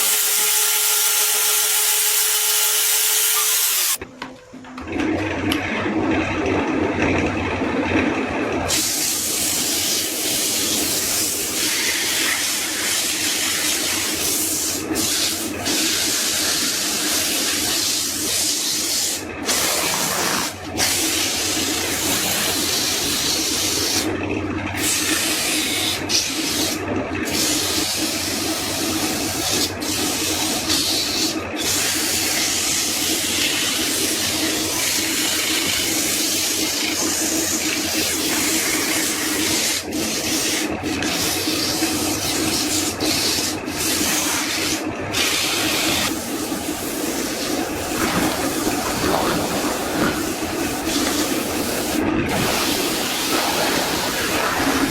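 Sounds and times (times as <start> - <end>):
power tool cutting wood: 0.0 - 4.0, 24.8 - 54.9.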